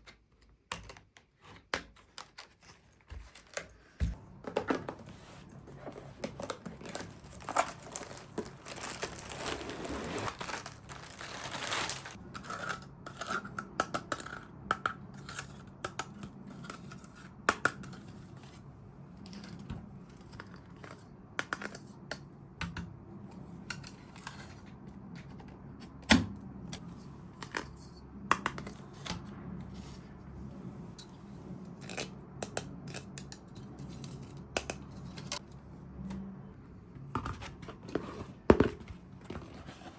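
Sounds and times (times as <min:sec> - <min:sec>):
plastic packaging tearing and crinkling: 0:06.4 - 0:12.2.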